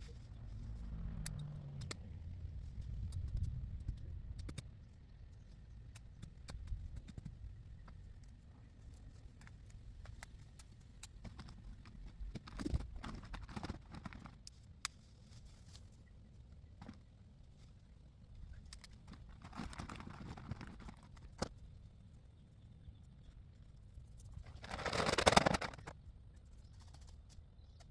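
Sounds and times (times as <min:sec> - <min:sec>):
low rumble: 0:00.0 - 0:05.1
crunching rustle: 0:18.4 - 0:21.6.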